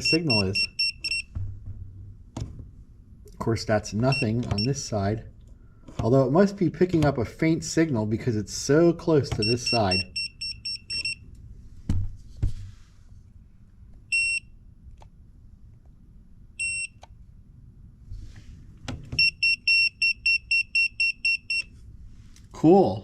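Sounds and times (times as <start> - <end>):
voltage tester beeping: 0.0 - 1.3, 4.0 - 4.8, 9.4 - 11.2, 14.1 - 14.5, 16.6 - 17.1, 19.2 - 21.7
soft knocks of handling: 1.3 - 2.8, 11.8 - 12.8.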